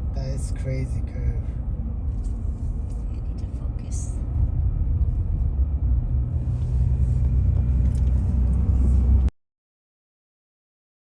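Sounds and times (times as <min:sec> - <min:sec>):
car cabin road and engine rumble: 0:00.0 - 0:09.3.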